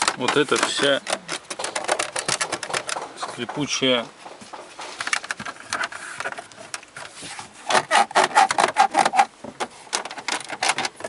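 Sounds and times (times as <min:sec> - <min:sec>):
plastic panel creaking: 0:00.0 - 0:11.0.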